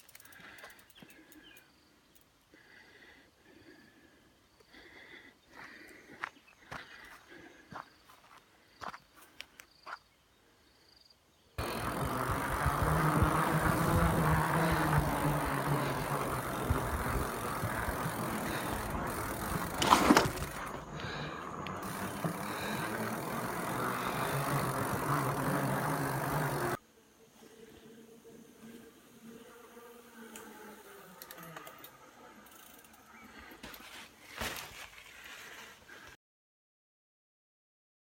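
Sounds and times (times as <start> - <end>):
bicycle rolling over rough track: 11.6 - 26.8, 30.0 - 35.7
faint clicks: 31.2 - 33.0.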